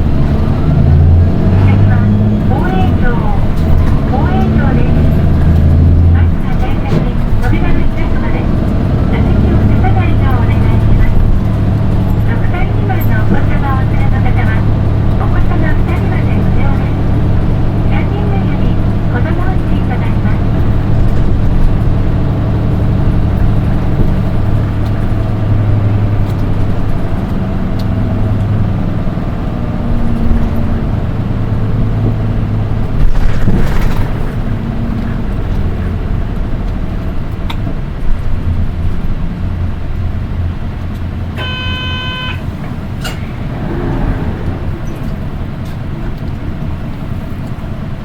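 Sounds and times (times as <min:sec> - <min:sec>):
diesel bus engine: 0:00.0 - 0:48.0
road noise: 0:00.0 - 0:48.0
shrill high-pitched engine note: 0:41.4 - 0:42.5.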